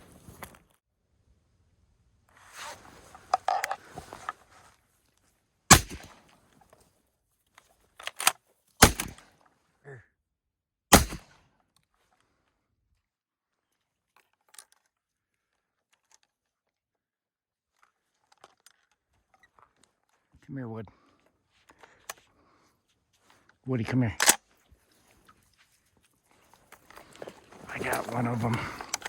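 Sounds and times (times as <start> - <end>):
rustling movement: 2.3 - 5.4, 24.4 - 29.0
shotgun shots: 5.7 - 6.1, 8.8 - 9.2, 10.9 - 11.3
sharp crack: 5.7 - 6.2, 8.8 - 9.2, 10.9 - 11.3.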